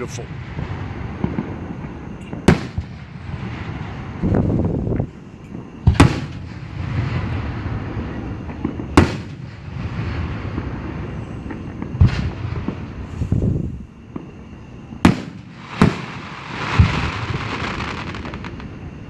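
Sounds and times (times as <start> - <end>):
firework shells booming: 0.0 - 19.0
rumbling noise: 0.0 - 19.0.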